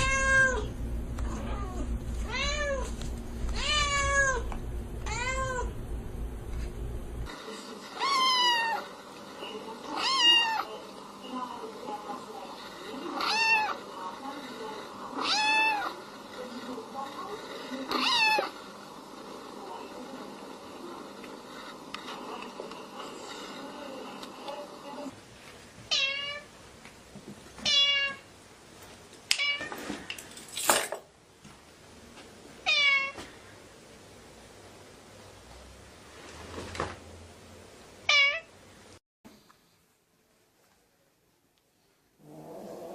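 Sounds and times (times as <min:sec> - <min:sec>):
low hum: 0:00.0 - 0:07.3.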